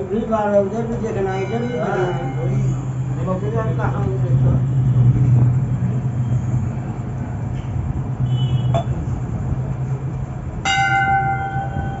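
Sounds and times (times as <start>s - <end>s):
traffic noise: 0.0s - 12.0s
vehicle engine hum: 0.0s - 12.0s
vehicle horn honk: 8.2s - 8.9s.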